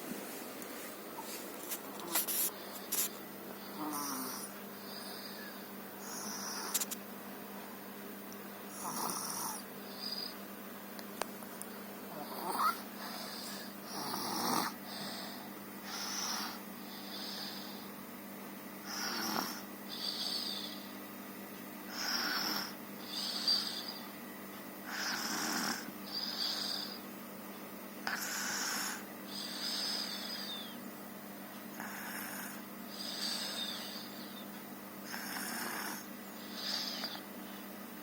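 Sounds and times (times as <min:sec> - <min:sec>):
girl snoring: 0:03.7 - 0:06.8, 0:08.7 - 0:10.3, 0:12.1 - 0:15.2, 0:15.8 - 0:17.8, 0:18.8 - 0:20.8, 0:21.9 - 0:24.0, 0:24.9 - 0:27.0, 0:28.0 - 0:30.7, 0:31.8 - 0:34.2, 0:35.1 - 0:37.2.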